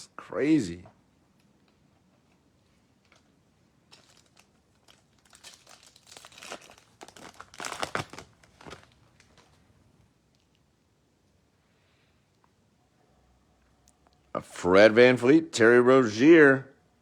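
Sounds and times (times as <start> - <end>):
card pack wrapper tearing and crinkling: 3.9 - 9.6.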